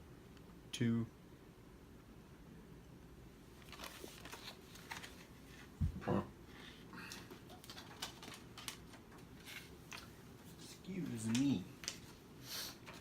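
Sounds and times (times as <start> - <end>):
paper pages rustling: 3.6 - 5.7, 7.1 - 13.0.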